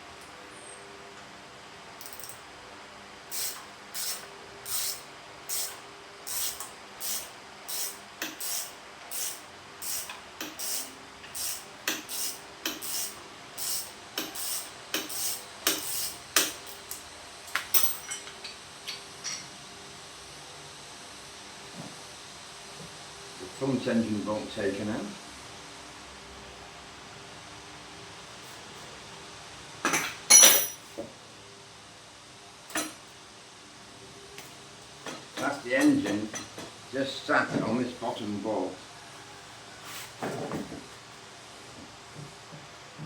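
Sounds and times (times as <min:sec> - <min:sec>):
ratchet wrench clicking: 0:02.0 - 0:02.4, 0:03.3 - 0:17.0.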